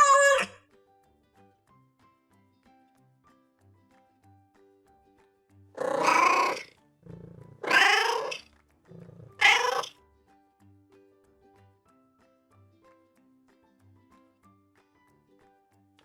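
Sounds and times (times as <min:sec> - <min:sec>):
cat meowing: 0:00.0 - 0:00.6, 0:05.8 - 0:09.9
soft background music: 0:00.0 - 0:16.0.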